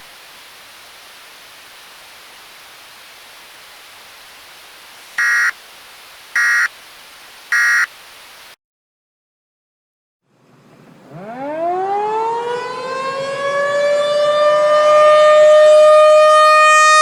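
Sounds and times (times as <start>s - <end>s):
static hiss: 0.0s - 8.6s
buzzy electronic beeps: 5.2s - 5.5s, 6.4s - 6.7s, 7.5s - 7.9s.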